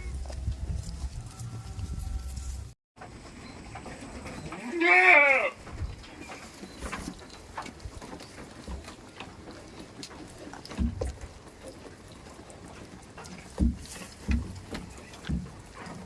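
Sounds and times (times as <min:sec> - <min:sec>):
goat bleating: 0:04.4 - 0:05.6.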